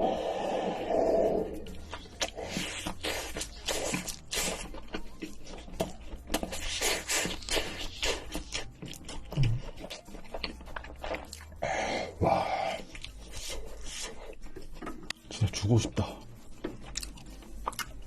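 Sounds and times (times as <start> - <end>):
person chewing and crunching: 0.0 - 18.0.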